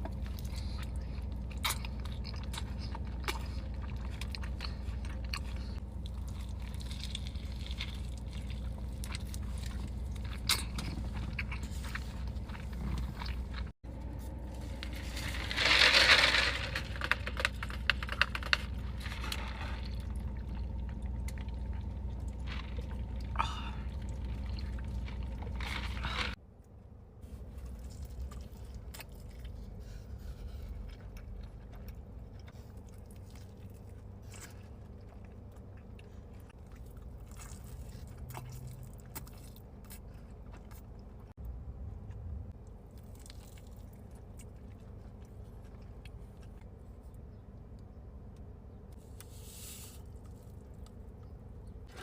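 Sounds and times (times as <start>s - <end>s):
person chewing: 0.0s - 13.8s, 27.6s - 41.4s
steady low hum: 0.0s - 52.0s.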